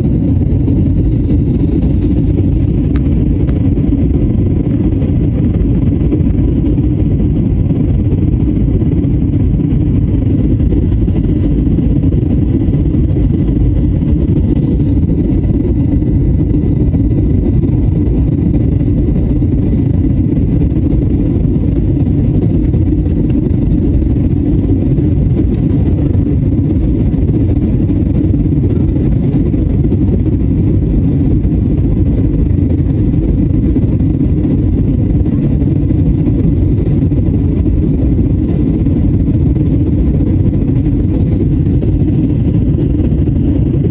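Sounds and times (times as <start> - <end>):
rushing air: 0.0 - 22.3
jet engines roaring: 0.0 - 43.9.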